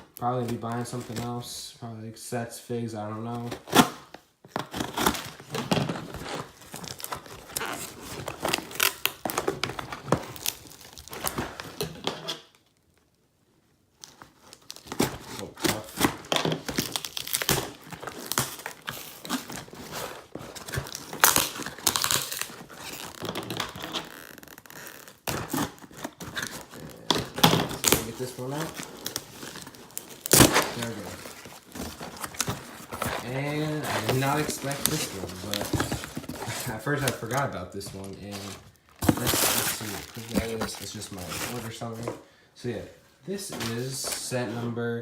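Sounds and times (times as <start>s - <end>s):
package wrapping tearing: 4.6s - 12.4s, 14.0s - 37.4s, 38.2s - 41.8s.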